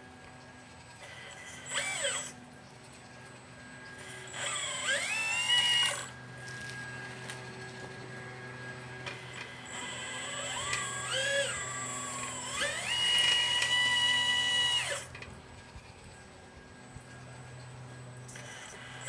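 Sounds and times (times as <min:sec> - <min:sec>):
small electric motor whining: 0:00.0 - 0:19.0
steady low hum: 0:00.0 - 0:19.0.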